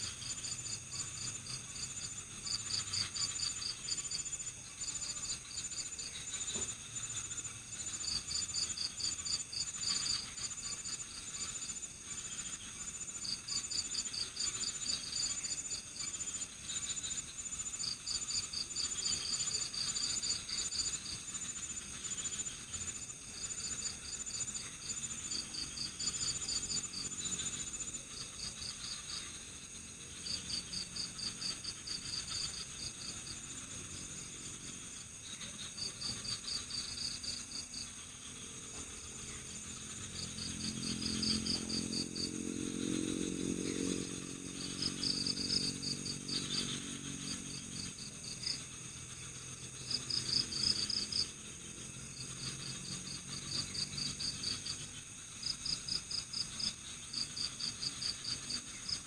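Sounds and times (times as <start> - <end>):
crickets trilling: 0.0 - 59.0.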